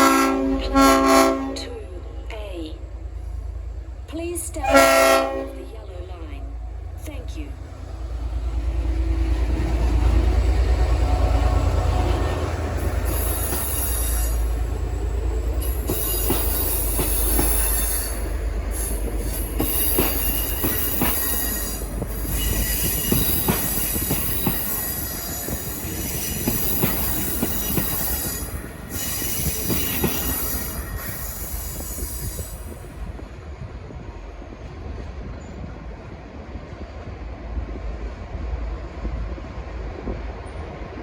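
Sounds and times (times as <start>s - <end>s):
train rumbling: 0.0s - 41.0s
wheels clicking over rail joints: 9.4s - 31.6s
train wheels squealing: 12.8s - 32.9s.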